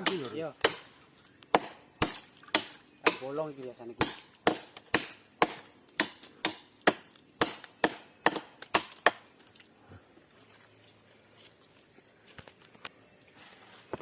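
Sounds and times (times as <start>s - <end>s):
axe chopping tree trunk: 0.0s - 0.9s, 1.5s - 9.3s.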